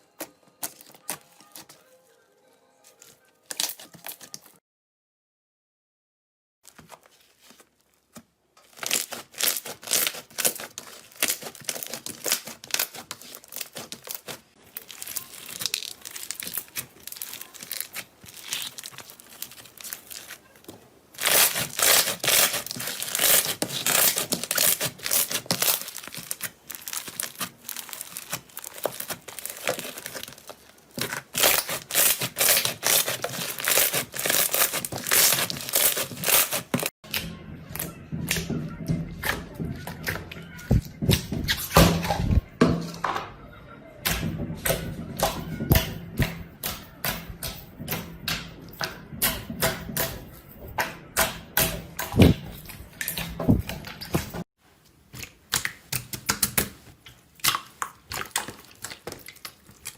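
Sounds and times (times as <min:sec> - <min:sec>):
slime crackling and popping: 0:08.6 - 0:20.6, 0:21.2 - 0:37.3.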